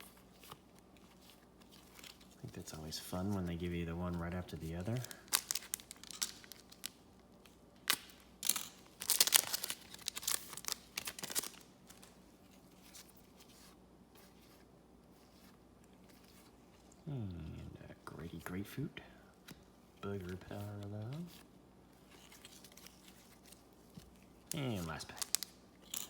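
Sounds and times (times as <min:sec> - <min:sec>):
wrapper crinkling and tearing: 0:00.0 - 0:13.7, 0:22.0 - 0:26.0
cards rustling and snapping: 0:00.0 - 0:17.0, 0:19.4 - 0:26.0.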